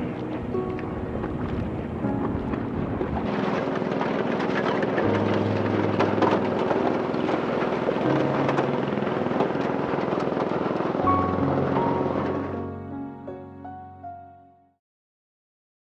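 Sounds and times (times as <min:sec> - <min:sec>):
background music: 0:00.0 - 0:14.8
engine chugging: 0:01.3 - 0:12.8.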